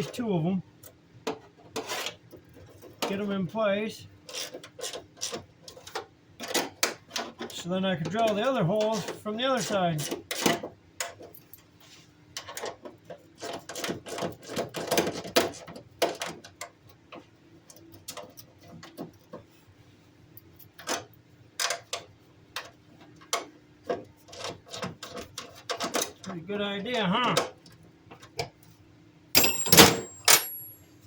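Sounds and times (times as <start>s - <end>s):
hand tools clicking and knocking: 29.4s - 30.8s.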